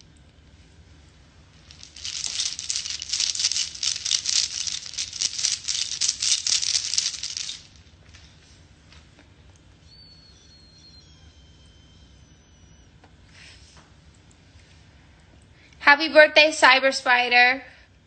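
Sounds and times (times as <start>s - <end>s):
beads rattling: 1.5s - 8.0s.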